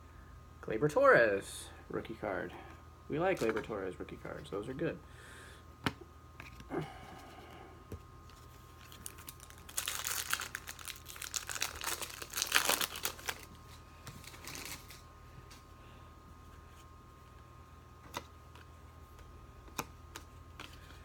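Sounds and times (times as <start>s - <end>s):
foil wrapper crinkling: 8.8s - 13.6s, 14.2s - 15.1s.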